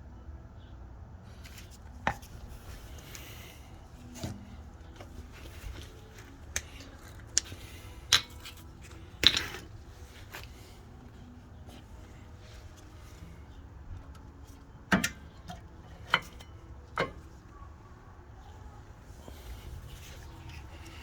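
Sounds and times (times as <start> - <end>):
metallic clanks of tools: 14.9 - 17.3.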